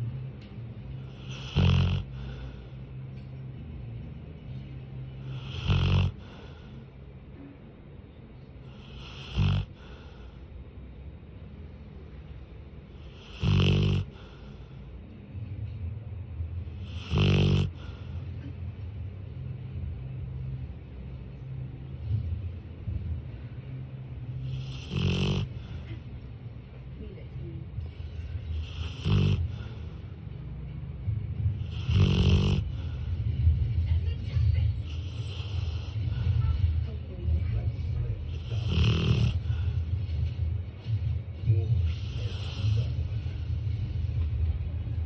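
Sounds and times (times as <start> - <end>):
dog snoring: 0.0 - 3.4, 4.5 - 6.9, 8.4 - 10.5, 12.8 - 14.9, 16.6 - 18.6, 24.0 - 26.1, 27.6 - 30.3, 31.0 - 33.3, 34.7 - 36.6, 37.4 - 43.7
low rumble of breathing: 0.0 - 45.0
dog breathing softly: 0.7 - 3.4, 5.2 - 7.2, 8.6 - 10.6, 16.7 - 18.7, 27.8 - 30.3, 34.8 - 36.6, 37.6 - 43.9.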